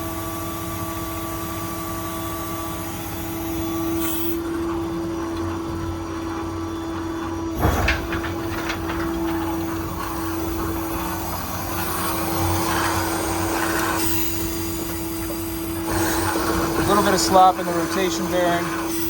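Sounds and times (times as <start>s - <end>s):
diesel engine idling: 0.0s - 19.0s
hydraulic whine: 0.0s - 19.0s
sharp metallic clunk: 7.6s - 13.0s
rattling clicks: 7.6s - 17.4s.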